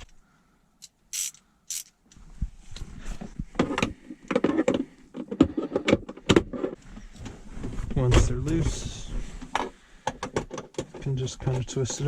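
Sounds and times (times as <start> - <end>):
ratchet clicking: 1.1 - 1.9
ratchet scraping: 1.1 - 1.9.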